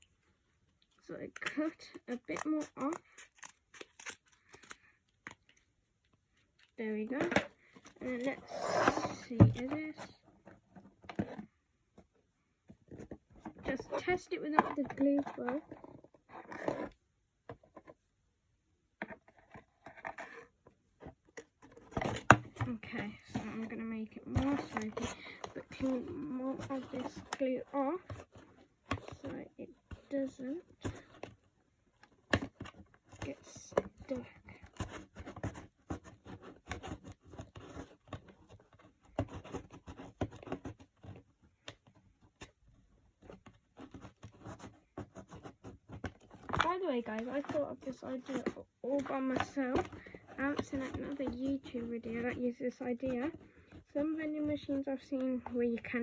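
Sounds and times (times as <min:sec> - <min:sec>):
cardboard scraping rustles: 0:07.2 - 0:11.6, 0:19.2 - 0:31.4, 0:43.2 - 0:56.0.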